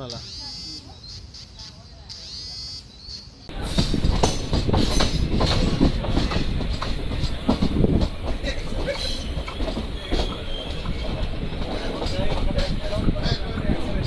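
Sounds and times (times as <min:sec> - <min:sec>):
train rumbling on track: 0:03.4 - 0:14.0
wheels clattering on rails: 0:03.5 - 0:14.0.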